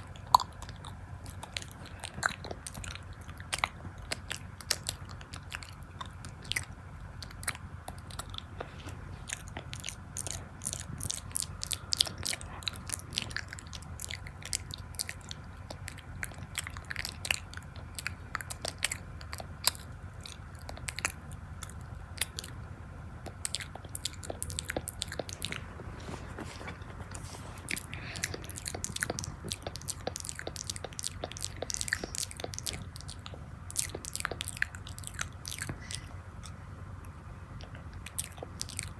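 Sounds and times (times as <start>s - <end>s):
mouth clicks: 0.0s - 22.6s, 23.2s - 38.9s
person chewing crunchy food: 0.0s - 22.6s, 23.2s - 36.6s, 37.6s - 38.9s.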